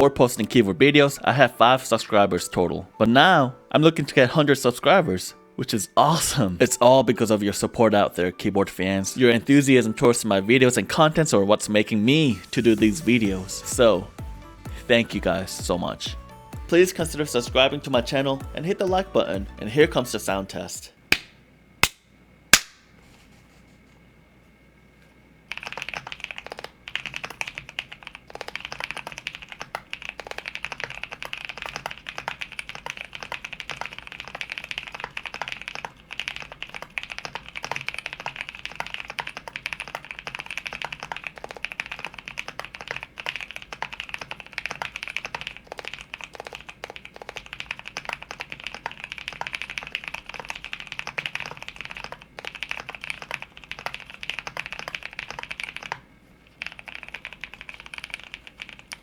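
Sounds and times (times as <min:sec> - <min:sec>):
fast typing on mechanical keyboard: 0:25.5 - 0:59.0.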